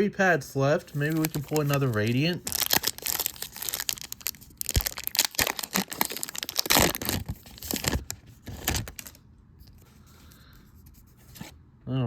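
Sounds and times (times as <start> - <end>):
foil wrapper crinkling and tearing: 0.9 - 9.2.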